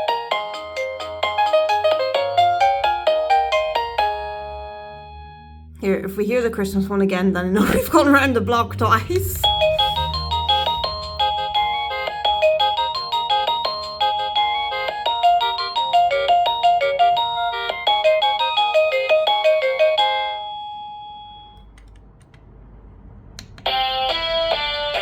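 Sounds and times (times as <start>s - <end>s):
doorbell chime melody: 12.2s - 21.6s.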